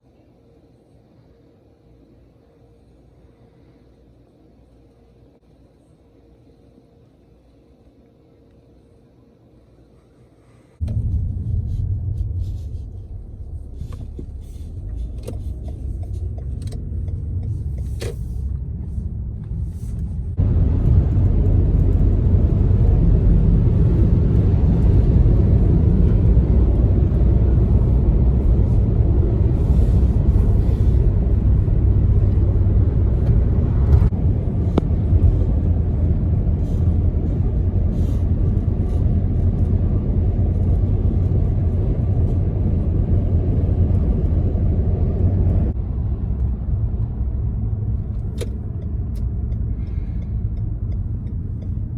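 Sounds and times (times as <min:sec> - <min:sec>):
road traffic rumble: 0:10.7 - 0:51.9.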